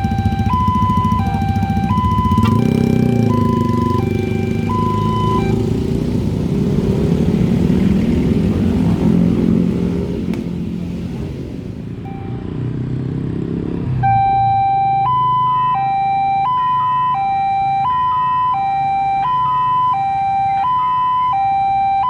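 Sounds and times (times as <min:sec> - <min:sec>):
two-tone crossing alarm: 0:00.0 - 0:05.9, 0:12.0 - 0:12.5, 0:14.0 - 0:22.0.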